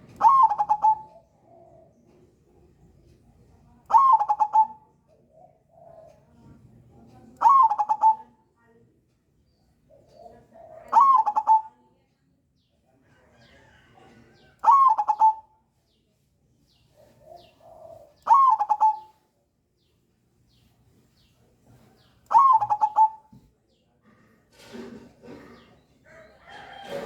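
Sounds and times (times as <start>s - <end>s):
dove cooing song: 0.0s - 2.3s, 3.9s - 6.4s, 7.4s - 8.4s, 9.9s - 11.8s, 14.4s - 15.6s, 16.9s - 19.2s, 22.2s - 23.3s.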